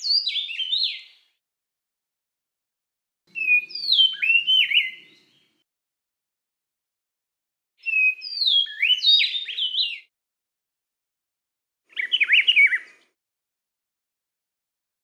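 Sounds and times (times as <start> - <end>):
songbird singing: 0.0 - 1.3, 3.3 - 5.6, 7.8 - 10.1, 11.9 - 13.2.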